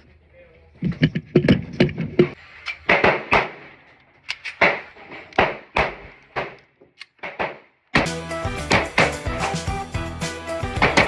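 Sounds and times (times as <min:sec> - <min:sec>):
gunshots echoing indoors: 0:02.7 - 0:03.9, 0:04.5 - 0:06.6
upbeat background music: 0:08.0 - 0:11.0.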